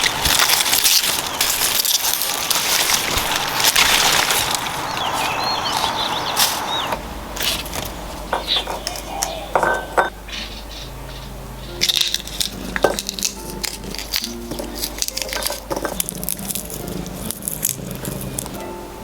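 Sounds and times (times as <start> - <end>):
objects clicking and clinking: 0.0 - 6.6, 7.4 - 10.1, 11.8 - 18.6
soft background music: 10.0 - 19.0.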